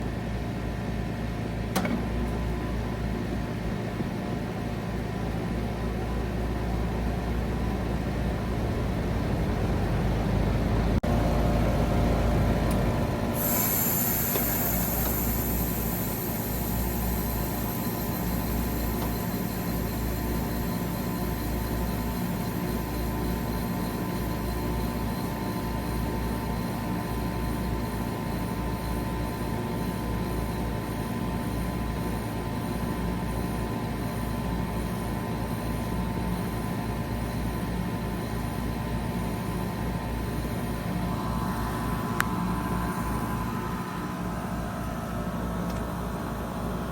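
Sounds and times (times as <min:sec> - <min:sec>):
heat pump humming: 0:05.2 - 0:33.6, 0:38.6 - 0:46.9
refrigerant rushing hiss: 0:13.3 - 0:34.2.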